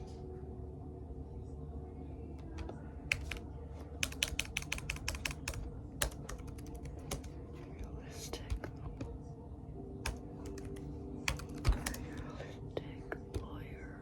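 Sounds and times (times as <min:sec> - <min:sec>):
keyboard typing: 0:02.4 - 0:07.4, 0:10.0 - 0:12.4.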